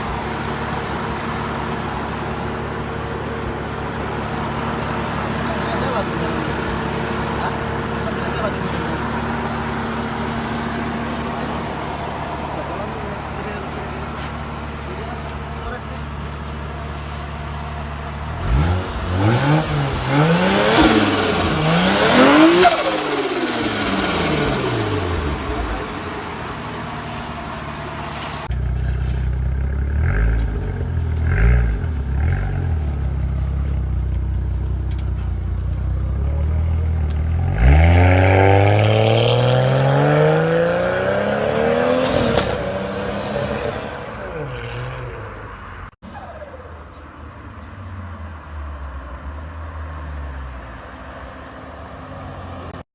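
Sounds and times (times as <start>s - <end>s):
car engine idling and revving: 0.0s - 52.8s.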